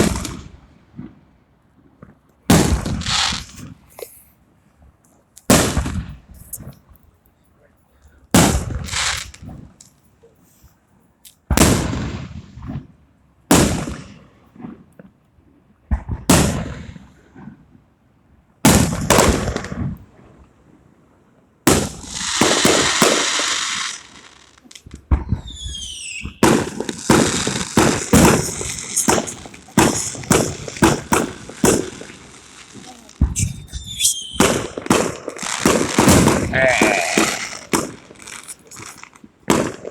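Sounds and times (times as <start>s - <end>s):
firework crackles: 0.0s - 1.1s, 2.5s - 4.3s, 8.4s - 10.0s, 21.7s - 39.9s
firework bangs: 0.0s - 1.2s, 2.5s - 4.0s, 5.5s - 6.7s, 8.4s - 9.7s, 11.5s - 12.9s, 13.5s - 14.2s, 15.9s - 17.0s, 18.6s - 20.0s, 21.7s - 39.9s
firework hissing spray: 21.8s - 24.9s, 25.6s - 39.2s
whistles falling in pitch: 25.4s - 26.5s, 33.3s - 34.7s.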